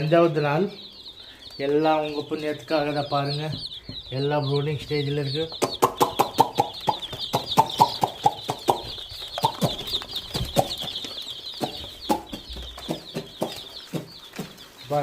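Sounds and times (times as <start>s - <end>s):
chicks peeping: 0.0s - 15.0s
sharp taps: 5.5s - 14.7s.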